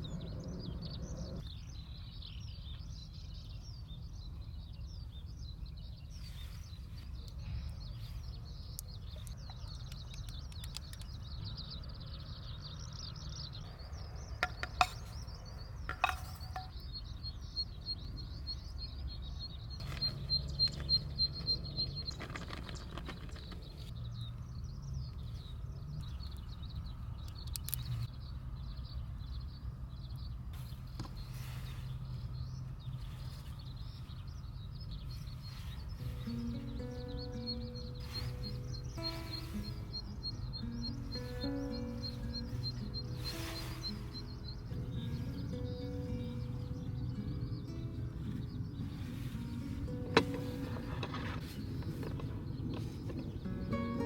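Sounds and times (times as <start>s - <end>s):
low wind rumble: 0.0s - 54.0s
skylark warbling song: 7.2s - 23.6s, 31.3s - 54.0s.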